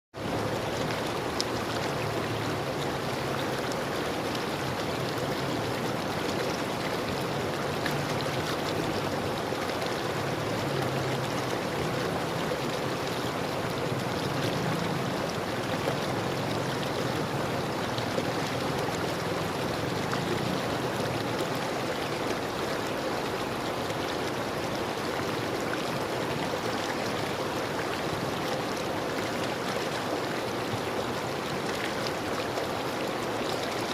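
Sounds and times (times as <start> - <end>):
river water flowing over stones: 0.2 - 33.9.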